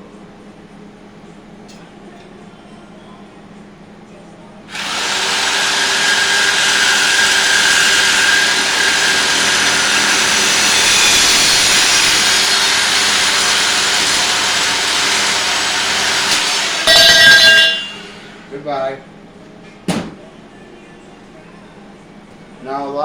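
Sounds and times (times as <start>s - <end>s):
reciprocating saw cutting metal: 4.7s - 18.3s.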